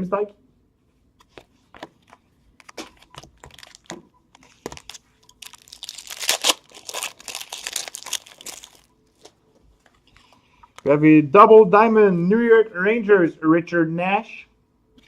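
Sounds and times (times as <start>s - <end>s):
cards being handled: 1.2s - 10.2s
foil wrapper crinkling and tearing: 2.6s - 8.9s.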